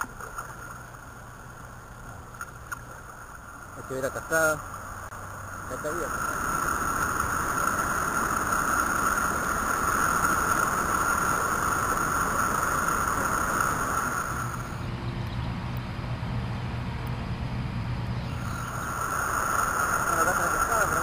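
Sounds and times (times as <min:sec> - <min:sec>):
waterfall roaring: 0:03.7 - 0:14.8, 0:18.4 - 0:21.0.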